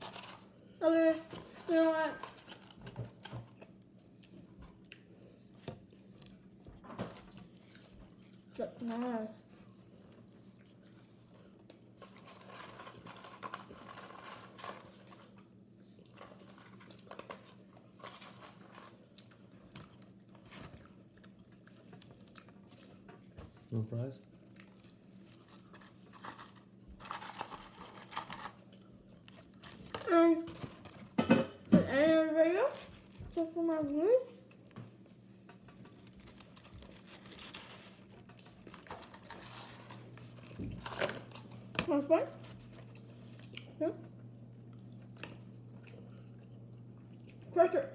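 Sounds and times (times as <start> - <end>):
person chewing food: 2.2 - 8.6, 9.6 - 30.0, 42.5 - 47.6.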